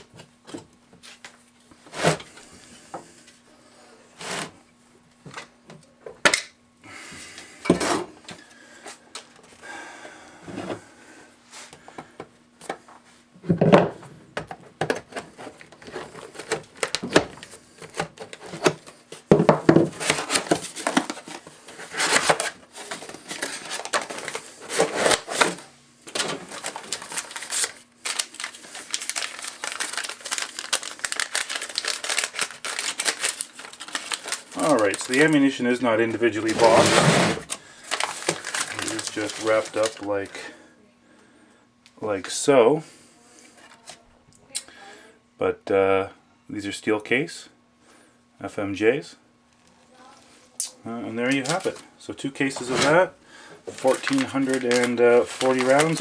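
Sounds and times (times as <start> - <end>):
packaging clattering and rustling: 13.5 - 35.6, 36.2 - 40.5, 51.3 - 51.8, 52.4 - 56.0
packaging clicks and knocks: 13.6 - 35.3, 37.4 - 40.0, 53.7 - 56.0.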